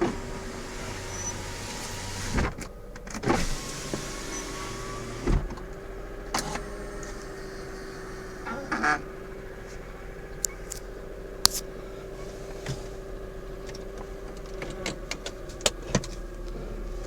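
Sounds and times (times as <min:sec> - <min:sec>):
transmission whine: 0:08.2 - 0:11.6.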